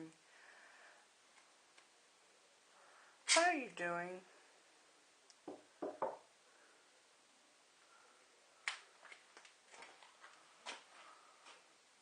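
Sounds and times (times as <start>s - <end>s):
soft knocks: 5.5s - 6.2s.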